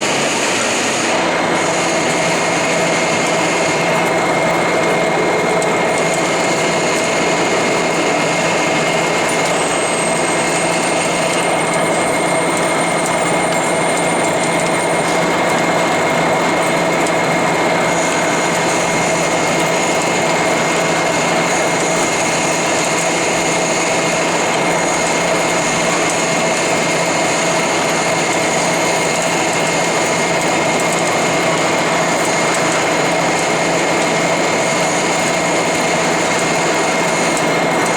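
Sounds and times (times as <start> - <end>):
lathe humming and whining: 0.0 - 37.9.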